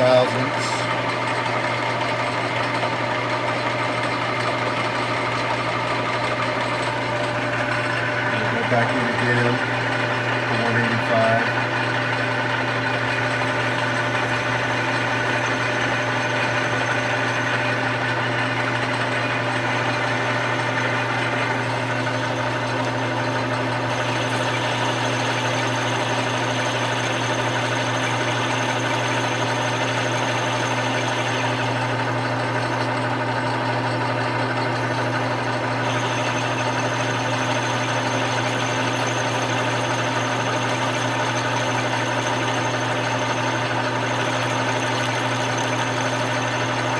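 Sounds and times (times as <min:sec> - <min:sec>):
machine tool motor hum: 0:00.0 - 0:46.9
cutter cutting steel: 0:13.2 - 0:32.9, 0:34.7 - 0:46.9.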